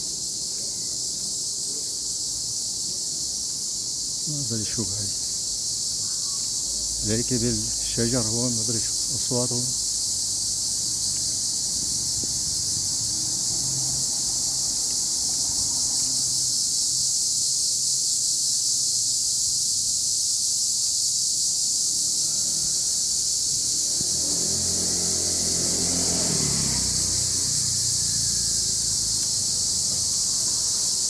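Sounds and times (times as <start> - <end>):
insect chorus drone: 0.0 - 31.0.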